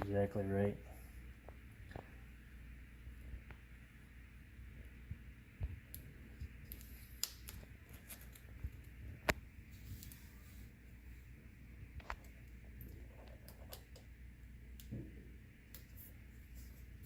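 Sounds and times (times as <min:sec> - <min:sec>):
decal paper rustling: 0:06.7 - 0:09.0.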